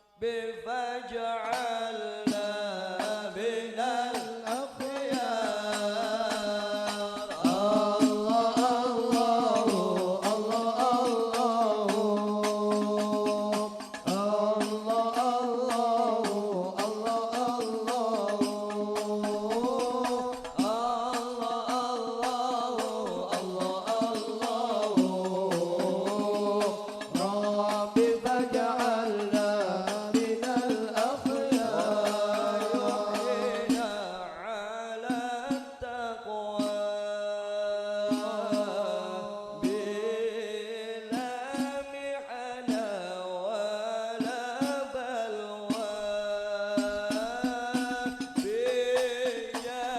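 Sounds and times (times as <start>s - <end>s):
person singing devotional song: 0.0s - 49.9s
frame drum strokes: 22.3s - 34.0s.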